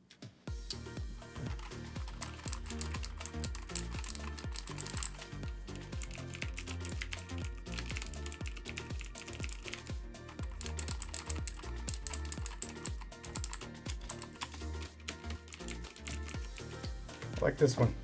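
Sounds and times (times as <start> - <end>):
background music: 0.0 - 18.0
clicky keyboard typing: 1.4 - 16.9.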